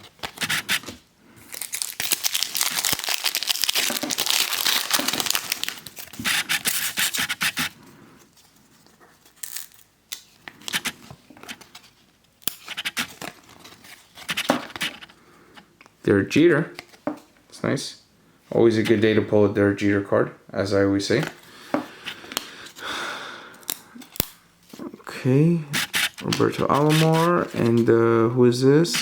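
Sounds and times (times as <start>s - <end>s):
cards clicking and rustling: 0.0s - 7.7s, 25.8s - 27.9s
wrapper tearing and crinkling: 1.5s - 7.2s, 9.4s - 9.9s, 25.9s - 27.8s.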